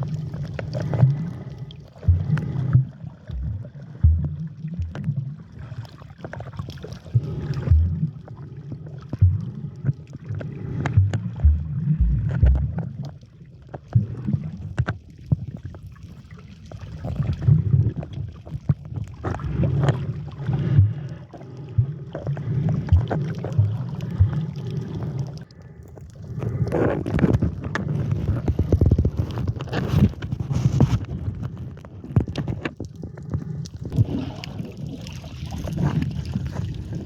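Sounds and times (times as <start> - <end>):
water sloshing against camera: 0.0 - 37.0
low thumps: 10.9 - 12.9.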